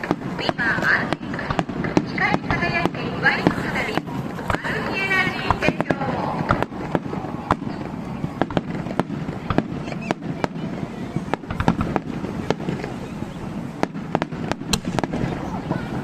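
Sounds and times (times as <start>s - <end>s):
fireworks bursting: 0.0s - 16.0s.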